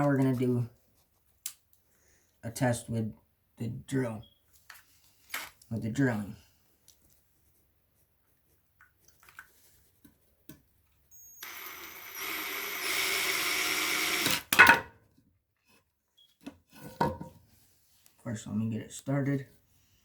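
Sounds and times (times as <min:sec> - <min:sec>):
cordless drill motor running: 0:11.4 - 0:14.5.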